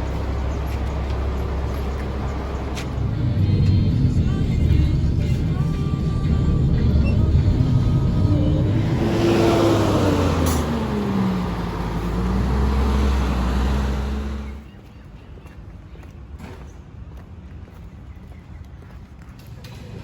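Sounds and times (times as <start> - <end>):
vehicle engine rumbling: 0.0 - 14.9.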